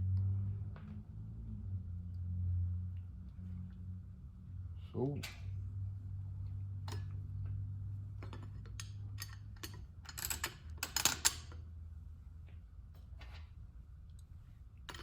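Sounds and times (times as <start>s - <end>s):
small metal parts clinking: 8.2s - 11.6s.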